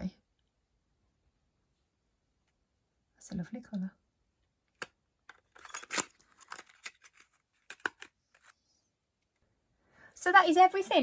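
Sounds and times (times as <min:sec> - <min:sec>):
plastic clicks: 0:04.7 - 0:08.6
packaging rustling: 0:05.4 - 0:08.6.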